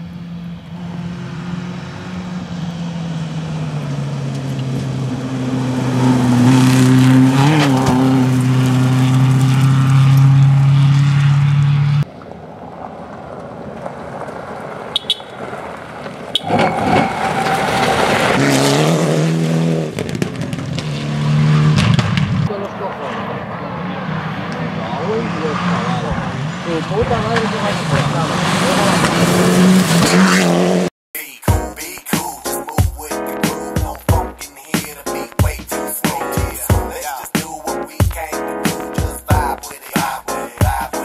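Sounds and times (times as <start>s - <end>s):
rally car engine at high revs: 0.0s - 12.0s, 16.4s - 30.9s
gravel rush: 0.0s - 30.9s, 33.1s - 41.0s
sharp cracks: 19.9s - 21.0s.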